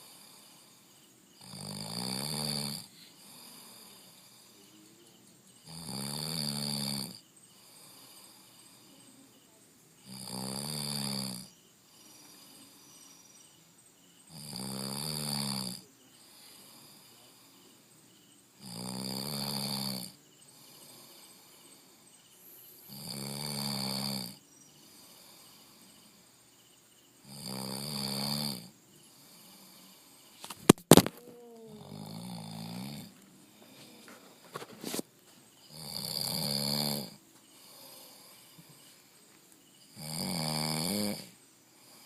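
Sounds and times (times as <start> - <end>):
person snoring: 1.4 - 4.7, 5.6 - 9.0, 10.0 - 13.4, 14.3 - 17.8, 18.6 - 21.8, 22.9 - 26.2, 27.2 - 35.0, 35.7 - 38.9, 39.9 - 42.0.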